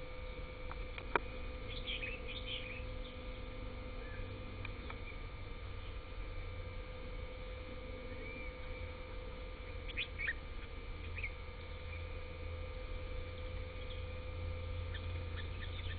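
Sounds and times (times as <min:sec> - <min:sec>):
steady low hum: 0:00.0 - 0:15.9.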